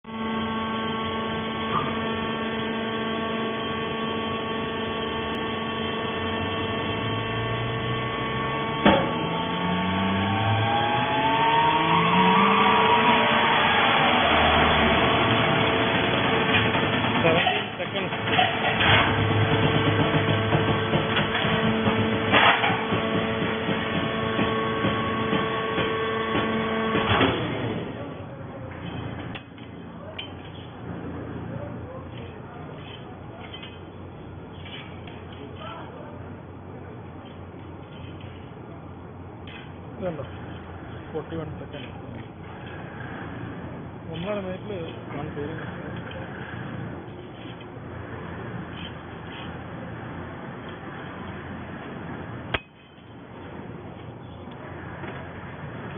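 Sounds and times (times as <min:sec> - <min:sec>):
baling machine hum: 0:00.0 - 0:55.9
motor whine rising in pitch: 0:00.1 - 0:18.0, 0:18.7 - 0:28.1
loud machine clunk: 0:06.1 - 0:10.9, 0:13.2 - 0:28.0
loud metal clank: 0:15.3 - 0:27.6
machine clattering knocks: 0:16.5 - 0:27.3.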